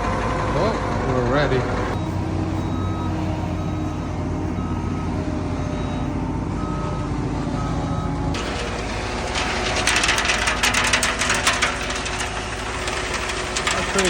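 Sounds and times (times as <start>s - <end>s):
diesel engine running: 0.0s - 14.0s
reversing alarm beeping: 0.2s - 8.4s.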